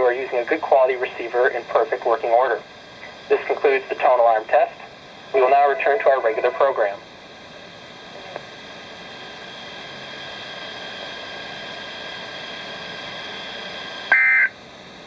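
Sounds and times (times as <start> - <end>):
faint steady tones: 0.0 - 15.0
radio static hiss: 0.0 - 15.0
loud two-tone beep: 14.1 - 14.6.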